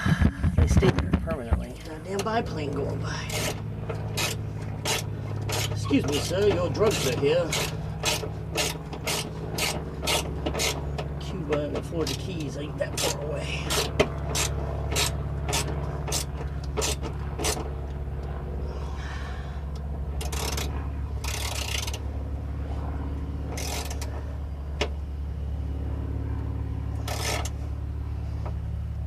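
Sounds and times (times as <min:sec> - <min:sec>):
steady low hum: 0:00.0 - 0:29.0
tool scraping metal: 0:03.2 - 0:17.7, 0:20.2 - 0:22.1, 0:23.5 - 0:24.2, 0:27.0 - 0:27.6.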